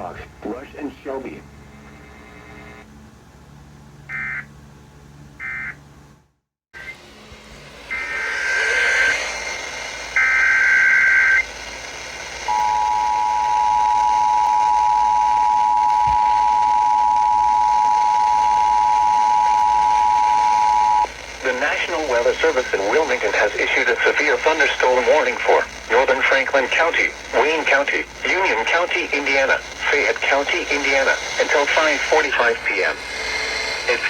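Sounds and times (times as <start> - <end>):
buzzy digital data bursts: 18.0 - 34.0.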